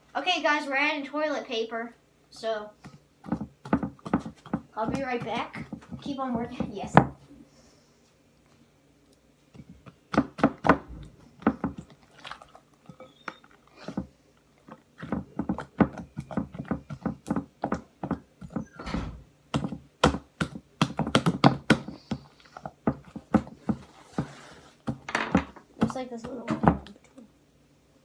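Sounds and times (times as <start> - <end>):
slime squelching: 2.4 - 7.2, 9.5 - 18.7.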